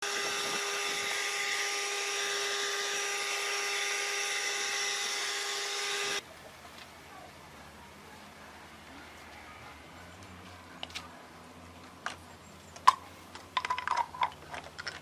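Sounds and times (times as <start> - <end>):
vacuum cleaner motor whining: 0.0 - 6.2.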